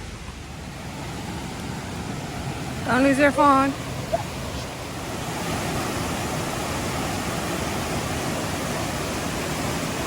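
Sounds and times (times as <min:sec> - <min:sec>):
running water rushing: 0:00.0 - 0:10.0.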